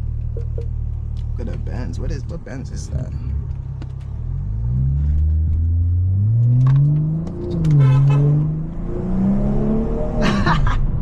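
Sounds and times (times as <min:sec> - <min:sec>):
car engine accelerating hard: 0:04.2 - 0:10.4.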